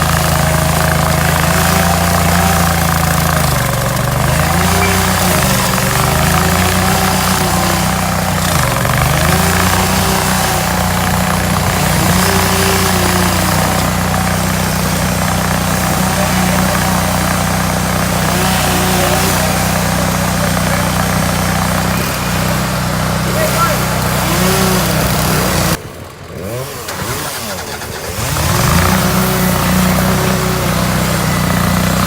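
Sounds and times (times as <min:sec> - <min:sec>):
stump grinder engine: 0:00.0 - 0:32.0.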